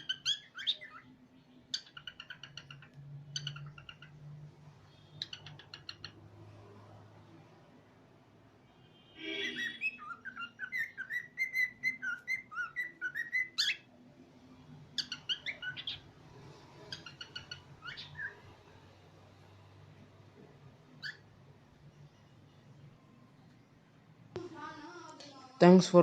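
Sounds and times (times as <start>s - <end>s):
cockatiel whistling and chirping: 0.0s - 1.1s, 1.7s - 4.1s, 5.2s - 6.2s, 9.4s - 13.9s, 15.0s - 16.0s, 16.9s - 18.4s, 21.0s - 21.2s.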